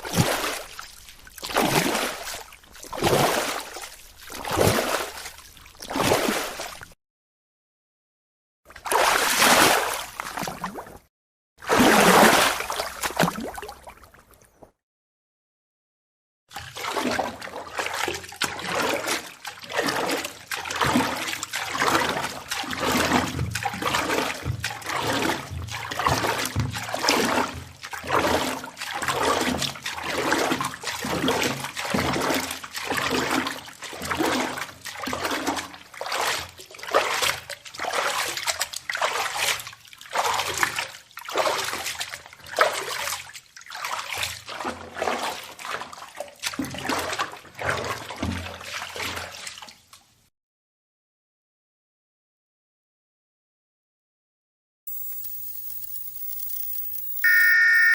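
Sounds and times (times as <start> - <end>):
swimming strokes splashing: 0.0 - 6.9, 8.8 - 10.9, 11.6 - 14.2, 16.6 - 34.6
water splash: 0.0 - 7.0, 8.8 - 11.0, 11.6 - 14.4.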